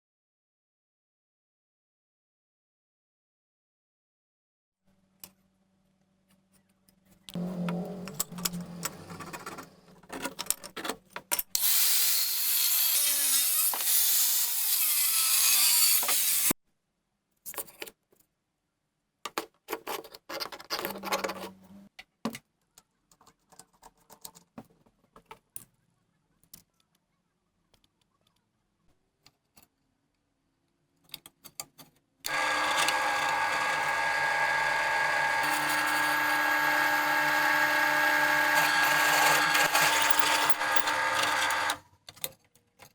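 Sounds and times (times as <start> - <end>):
handheld power tool running: 11.6 - 16.6, 32.3 - 41.8.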